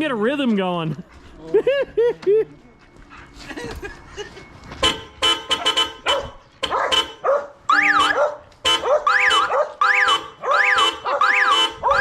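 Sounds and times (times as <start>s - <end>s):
car horns honking: 4.7s - 12.0s.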